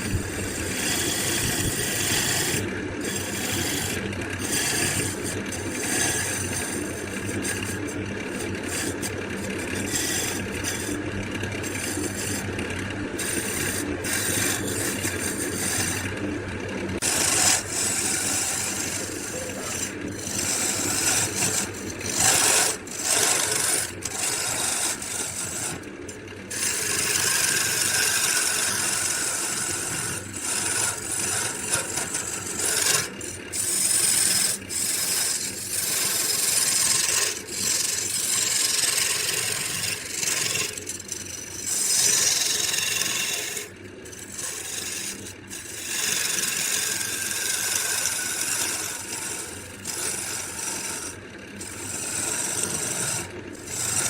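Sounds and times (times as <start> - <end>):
tool rasping on wood: 0.0 - 16.3, 16.9 - 54.0
steady low hum: 0.0 - 41.9.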